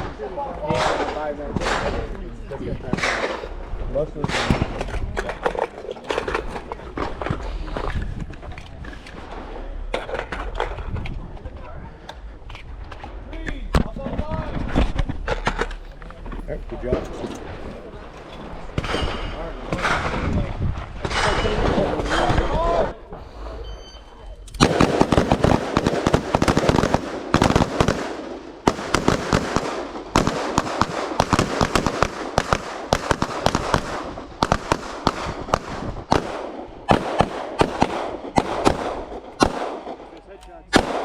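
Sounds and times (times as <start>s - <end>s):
rapid rifle and pistol gunfire: 0.0s - 11.0s, 18.5s - 22.9s, 24.6s - 41.0s.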